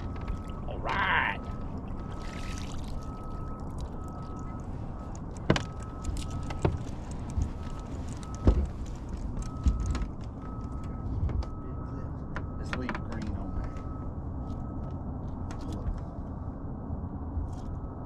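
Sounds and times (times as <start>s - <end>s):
faint beeps: 0.0s - 15.2s
steady low rumble: 0.0s - 18.0s
gear knocking and clunking: 3.0s - 11.6s.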